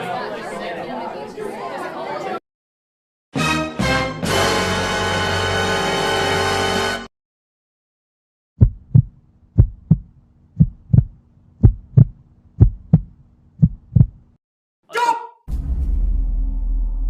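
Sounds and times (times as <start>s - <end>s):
heartbeat thumps: 8.6s - 14.3s.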